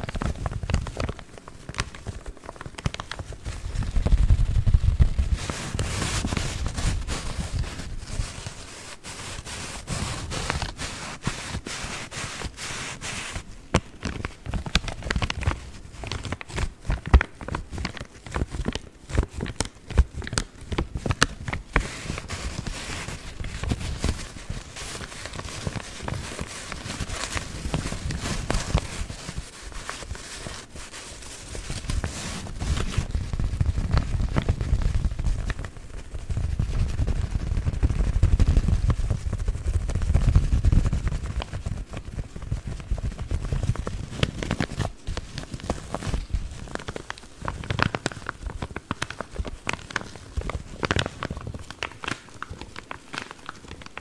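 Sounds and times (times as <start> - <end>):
deeper paper rubbing: 0.0 - 52.2
paper filters crinkling: 0.0 - 54.0.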